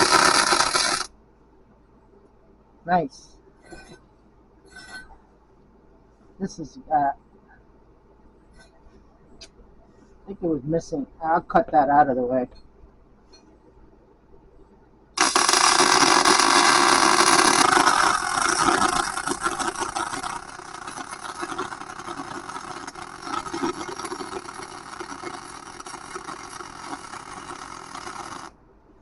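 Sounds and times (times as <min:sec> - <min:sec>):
welding arc crackling: 0:00.0 - 0:01.1, 0:15.2 - 0:28.6.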